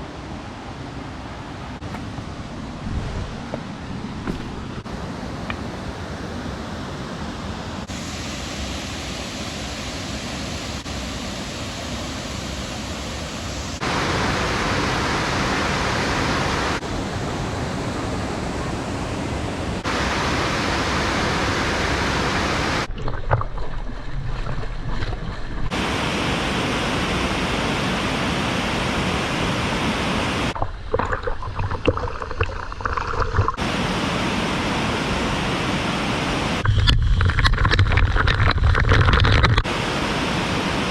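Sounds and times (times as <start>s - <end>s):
wind buffeting microphone: 2.1s - 4.9s
waterfall rushing water: 4.6s - 22.9s, 25.7s - 30.6s, 33.6s - 36.6s, 39.6s - 40.9s.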